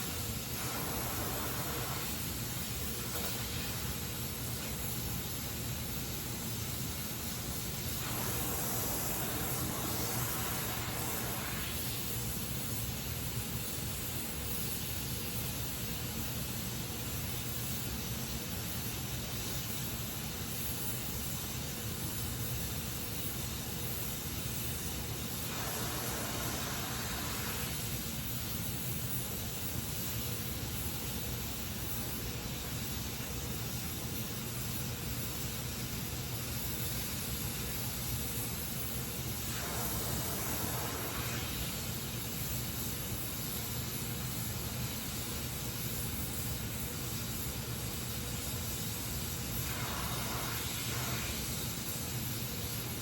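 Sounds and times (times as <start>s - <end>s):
welding torch flame hissing: 0.0s - 53.0s.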